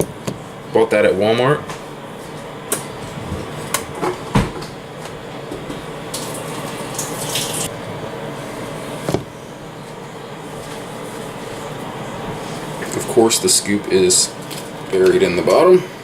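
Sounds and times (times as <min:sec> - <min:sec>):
water running into container: 0:06.1 - 0:07.7.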